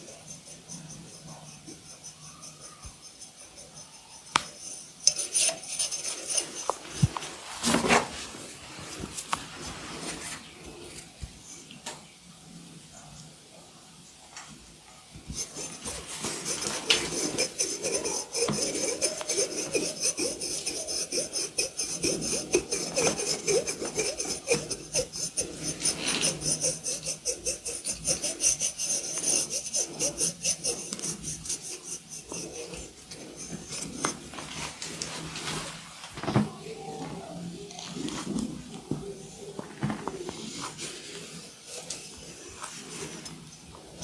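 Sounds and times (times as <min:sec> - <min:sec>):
rasping strokes over hair and skin: 0:00.0 - 0:07.9, 0:15.3 - 0:35.7.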